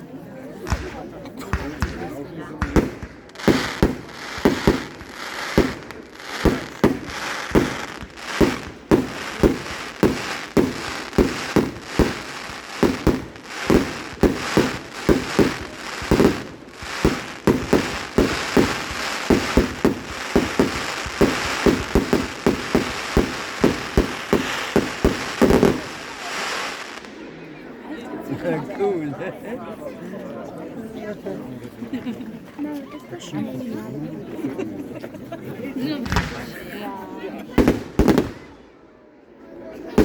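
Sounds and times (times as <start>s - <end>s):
crackling firework stars: 0.6s - 27.3s, 37.5s - 38.7s
firework shells banging: 2.6s - 26.9s.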